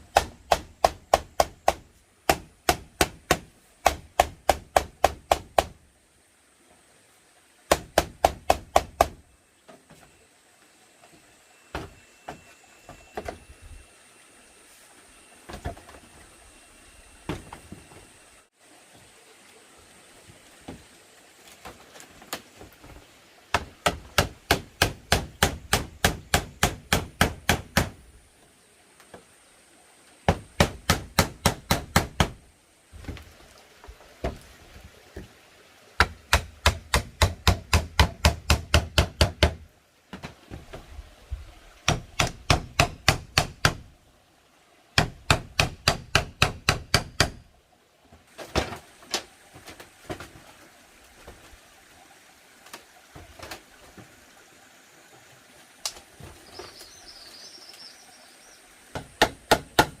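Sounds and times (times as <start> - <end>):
hand tool striking bamboo: 0.0 - 5.8, 23.5 - 28.0, 30.3 - 32.4, 36.0 - 39.6, 41.8 - 43.8, 45.0 - 47.4, 59.0 - 60.0.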